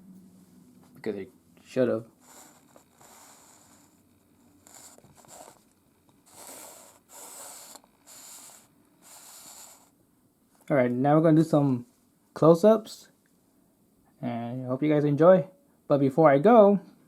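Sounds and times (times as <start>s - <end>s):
faint scraping and rubbing: 0.1s - 10.0s.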